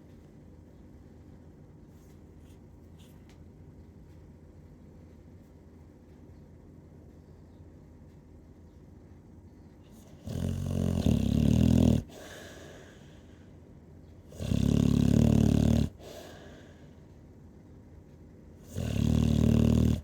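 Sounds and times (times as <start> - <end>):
loud buzzing snores: 10.1 - 12.8, 14.3 - 16.5, 18.7 - 20.0.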